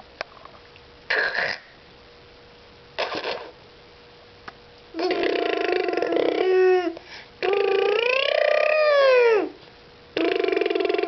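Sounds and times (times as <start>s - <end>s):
baby making raspy vocal noises: 5.0s - 9.6s.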